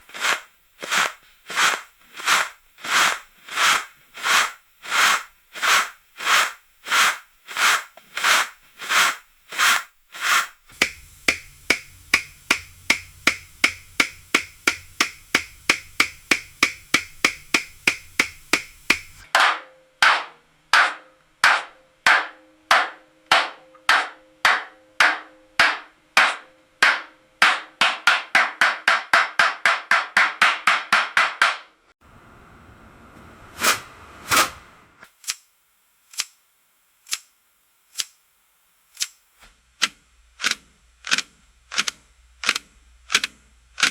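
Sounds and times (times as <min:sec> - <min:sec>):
low hum: 0:10.7 - 0:19.2, 0:32.0 - 0:35.0
sharp knocks: 0:10.7 - 0:20.2.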